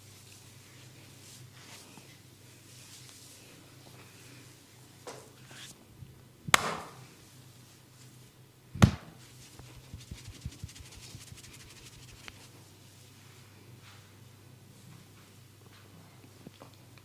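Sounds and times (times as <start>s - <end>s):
hand slaps on body: 6.5s - 7.0s, 8.8s - 9.2s.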